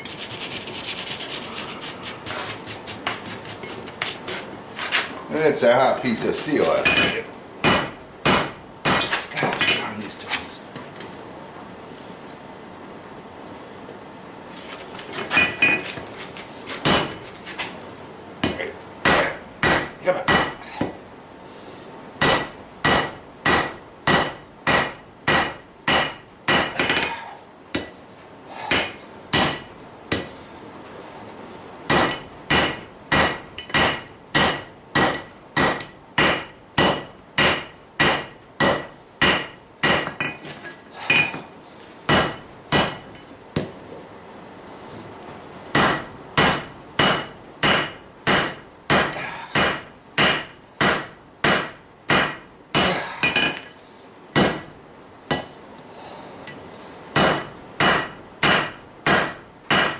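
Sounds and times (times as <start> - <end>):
hammer striking steel on anvil: 6.8 - 9.1, 18.4 - 21.0, 22.2 - 27.2, 28.7 - 30.4, 31.9 - 40.4, 42.1 - 43.1, 45.7 - 53.7, 54.4 - 54.7, 55.3 - 55.5, 57.2 - 59.9.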